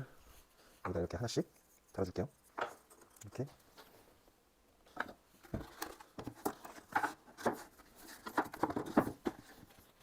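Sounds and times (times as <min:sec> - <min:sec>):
wooden pieces knocking and scraping: 0:04.9 - 0:09.9.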